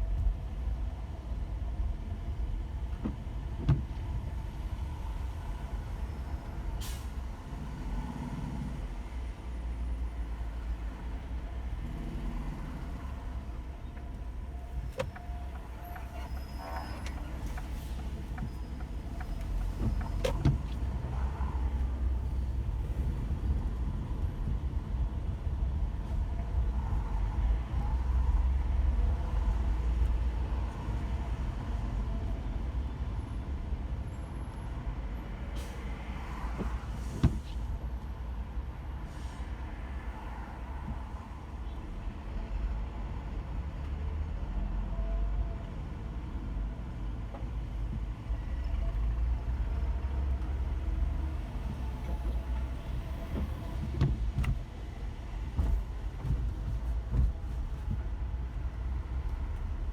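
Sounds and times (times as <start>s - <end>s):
road and engine rumble: 0.0s - 59.9s.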